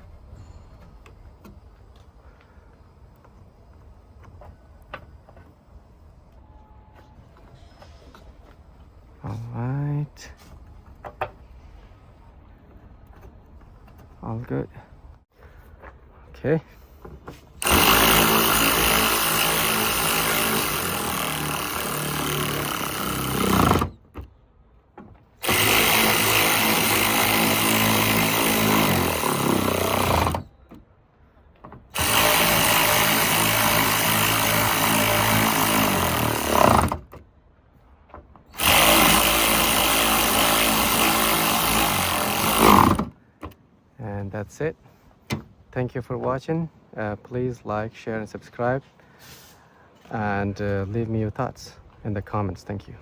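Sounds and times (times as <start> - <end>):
power drill driving bolts: 17.6 - 24.1, 25.4 - 30.6, 31.9 - 37.1, 38.5 - 43.2.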